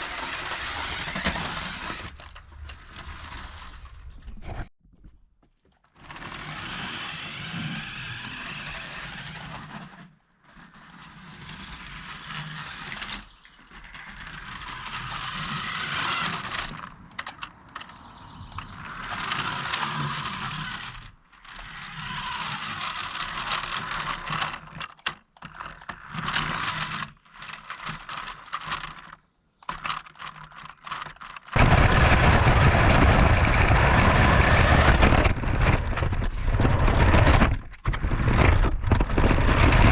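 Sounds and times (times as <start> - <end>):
toy truck electric motor whirring: 0.0 - 3.8, 6.0 - 31.7
low rumbling noise: 1.7 - 4.7, 31.6 - 39.9.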